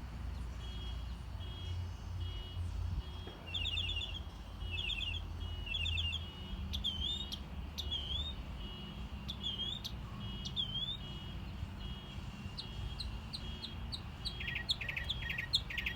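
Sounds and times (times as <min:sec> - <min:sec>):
songbird singing: 0:00.2 - 0:15.9.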